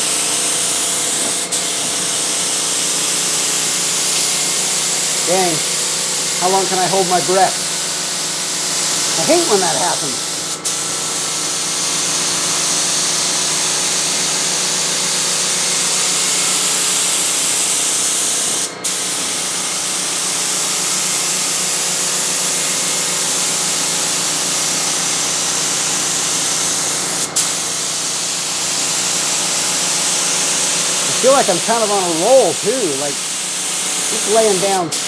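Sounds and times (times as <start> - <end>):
spray can hissing: 0.0 - 14.1, 23.9 - 35.0.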